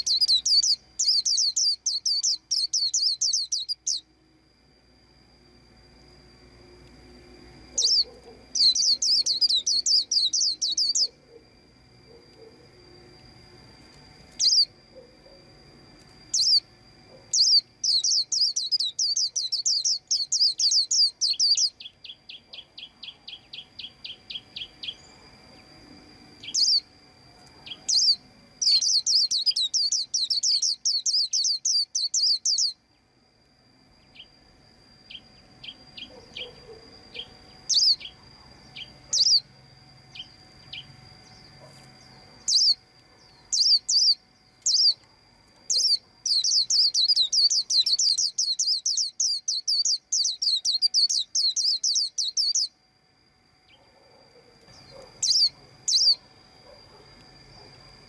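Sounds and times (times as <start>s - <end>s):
bird trilled song: 0.0s - 4.2s, 7.6s - 11.4s, 14.3s - 15.4s, 16.2s - 25.7s, 26.4s - 26.9s, 27.6s - 33.1s, 35.1s - 39.5s, 40.1s - 45.0s, 45.7s - 52.8s, 54.7s - 56.3s
faint steady high tone: 0.0s - 58.0s.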